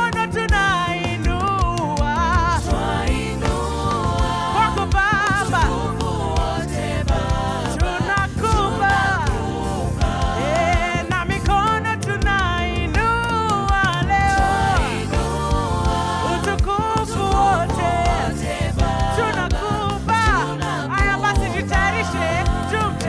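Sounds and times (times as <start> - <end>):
band with bass and drums: 0.0 - 23.0
singers with vibrato: 0.0 - 23.0.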